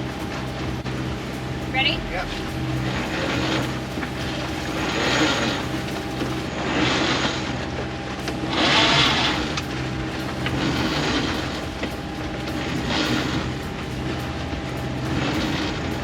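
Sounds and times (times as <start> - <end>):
boat engine running: 0.0 - 16.0
rushing noise: 1.0 - 6.4.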